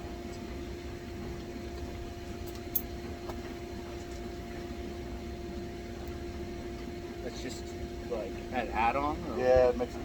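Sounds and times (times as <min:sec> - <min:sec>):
air conditioner unit humming: 0:00.0 - 0:10.0.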